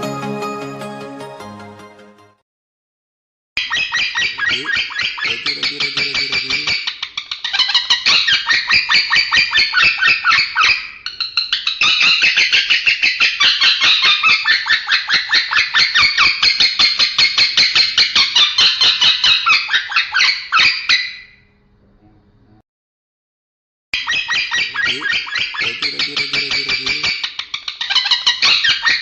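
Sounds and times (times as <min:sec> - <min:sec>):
lovebird chattering: 0:03.7 - 0:21.1, 0:24.0 - 0:29.0.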